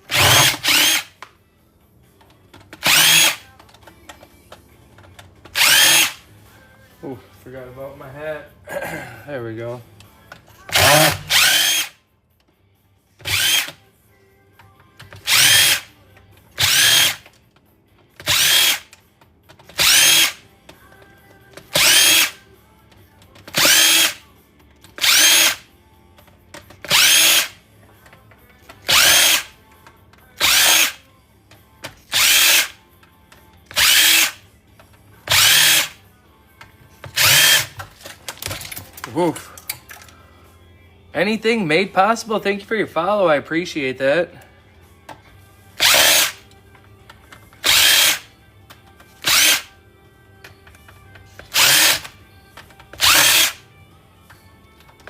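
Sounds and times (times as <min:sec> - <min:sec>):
power drill whining: 0:00.0 - 0:01.2, 0:02.8 - 0:03.6, 0:05.5 - 0:06.2, 0:10.6 - 0:12.0, 0:13.2 - 0:13.8, 0:15.2 - 0:15.9, 0:16.6 - 0:17.4, 0:18.2 - 0:18.9, 0:19.7 - 0:20.4, 0:21.7 - 0:22.4, 0:23.5 - 0:24.2, 0:25.0 - 0:25.6, 0:26.8 - 0:27.6, 0:28.8 - 0:29.5, 0:30.4 - 0:31.0, 0:32.1 - 0:32.8, 0:33.7 - 0:34.4, 0:35.3 - 0:36.0, 0:37.1 - 0:37.8, 0:45.8 - 0:46.4, 0:47.6 - 0:48.3, 0:49.2 - 0:49.8, 0:51.4 - 0:52.2, 0:52.9 - 0:53.7.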